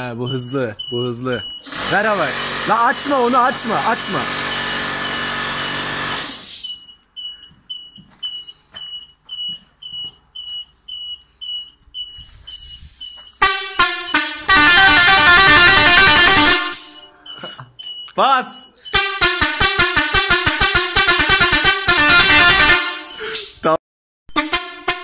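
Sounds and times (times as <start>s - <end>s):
air horn alternating notes: 12.2s - 17.5s, 18.4s - 23.5s, 24.3s - 25.0s
air horn blasts: 13.4s - 17.2s, 18.8s - 23.4s, 24.3s - 25.0s.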